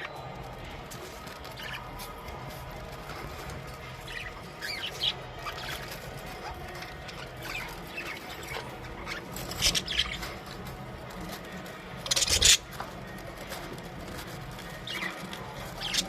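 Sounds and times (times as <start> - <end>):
budgerigars chirping: 4.0 - 10.7, 12.0 - 12.8.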